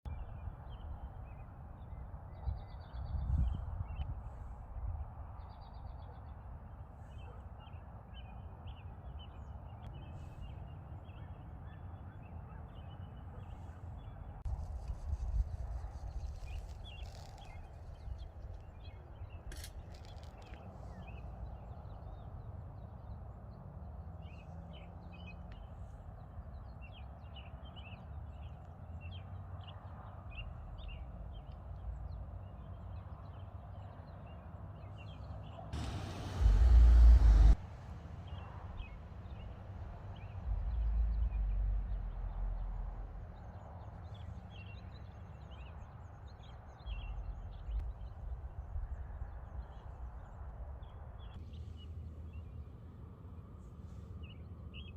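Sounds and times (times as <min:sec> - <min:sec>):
small birds chirping: 0:00.1 - 0:37.6
loud rush of noise: 0:35.8 - 0:38.0
low outdoor rumble: 0:35.8 - 0:43.9.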